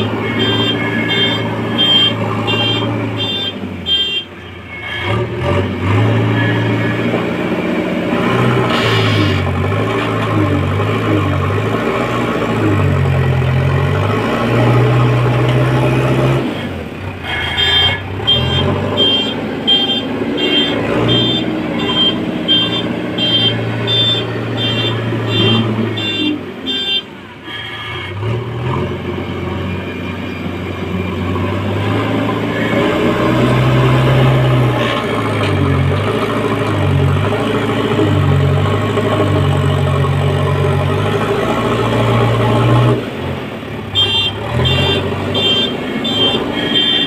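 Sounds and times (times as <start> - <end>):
reversing alarm beeping: 0.0 - 5.2, 17.3 - 28.2
diesel engine working: 0.0 - 47.0.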